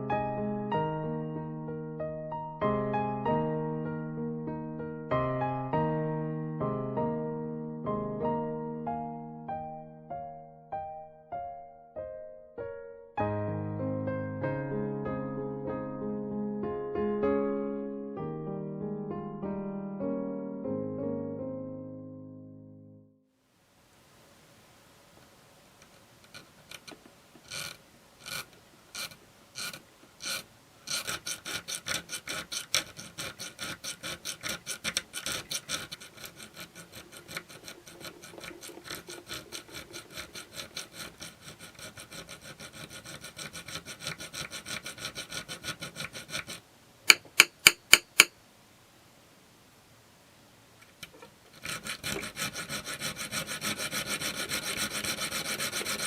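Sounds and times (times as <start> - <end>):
file rasping on steel blade: 26.3 - 48.3, 51.5 - 56.0.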